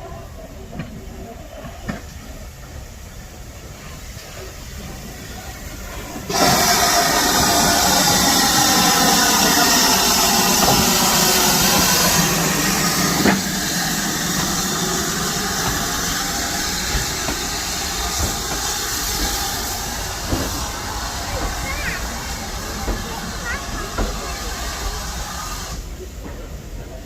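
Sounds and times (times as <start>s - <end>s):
steam locomotive venting steam: 0.0s - 27.0s.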